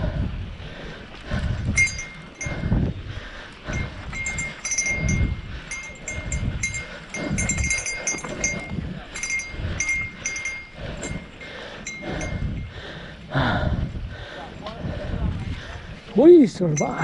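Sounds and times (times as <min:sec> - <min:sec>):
low thumping rumble: 0:00.0 - 0:16.1
small bell jingling: 0:01.7 - 0:02.7, 0:03.7 - 0:12.7, 0:16.5 - 0:17.0.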